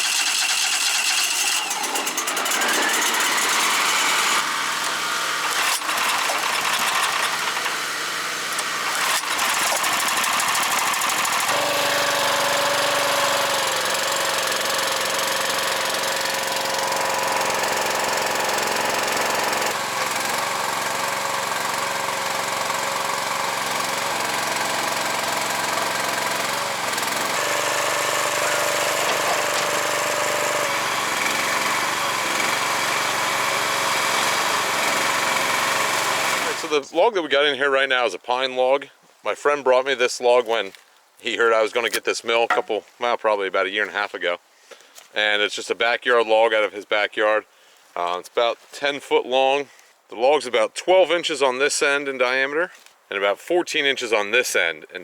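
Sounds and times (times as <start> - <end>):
sawmill engine running: 0.0 - 36.8.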